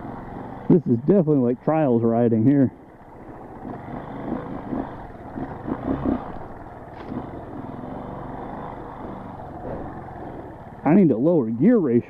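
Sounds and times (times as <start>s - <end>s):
motorcycle engine at low revs: 0.0s - 12.0s.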